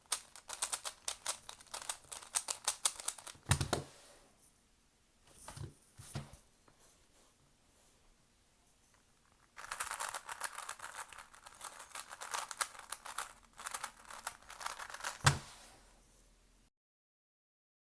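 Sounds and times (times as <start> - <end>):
puzzle cube layers clicking: 0.0 - 3.8, 9.6 - 15.4.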